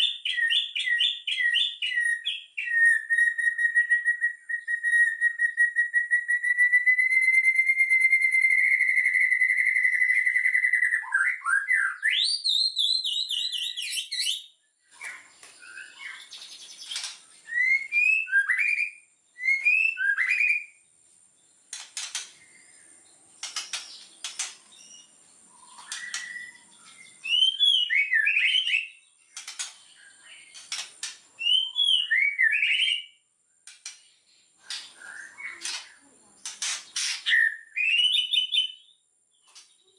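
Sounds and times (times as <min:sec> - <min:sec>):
bird whistling song: 0:00.0 - 0:20.9, 0:21.7 - 0:39.9
bird clicking calls: 0:21.7 - 0:22.7, 0:23.4 - 0:24.7, 0:25.5 - 0:26.6, 0:29.3 - 0:29.9, 0:30.5 - 0:31.2, 0:33.6 - 0:37.5.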